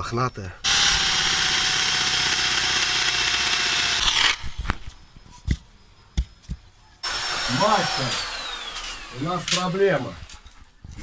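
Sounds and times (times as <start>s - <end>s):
cordless drill boring into wood: 0.7s - 4.6s, 7.0s - 10.6s.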